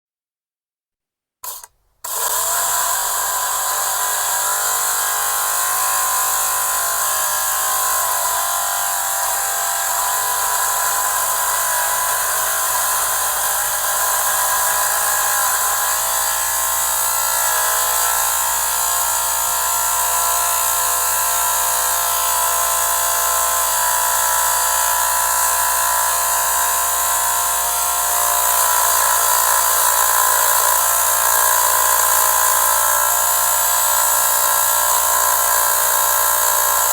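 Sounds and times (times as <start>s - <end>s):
lint remover motor whine: 1.4s - 17.0s.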